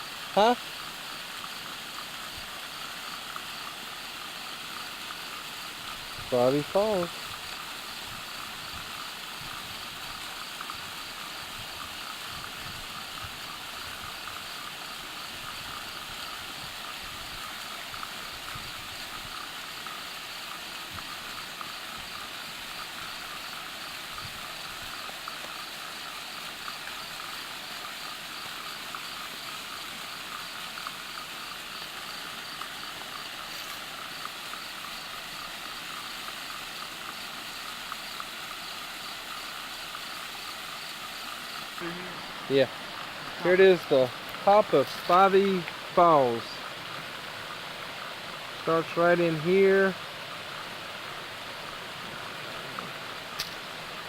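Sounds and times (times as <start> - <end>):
waterfall rushing: 39.3 - 54.0.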